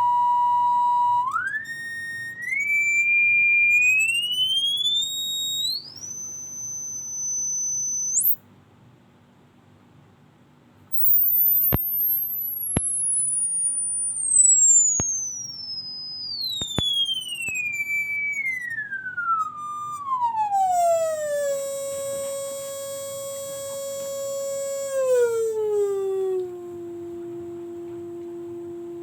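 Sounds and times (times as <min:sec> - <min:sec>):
electronic tone sweeping down: 0:00.0 - 0:08.4, 0:10.9 - 0:29.0
faint clicks: 0:10.9 - 0:15.7, 0:16.4 - 0:17.8.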